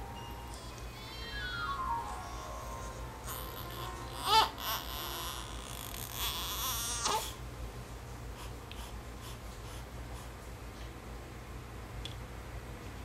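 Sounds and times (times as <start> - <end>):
baby fussing: 0.5 - 7.4.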